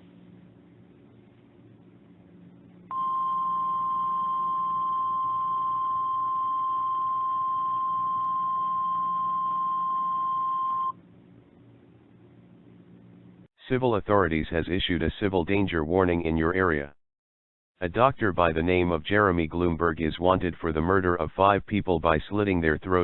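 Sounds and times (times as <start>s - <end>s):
faint low hum: 0.0s - 16.9s.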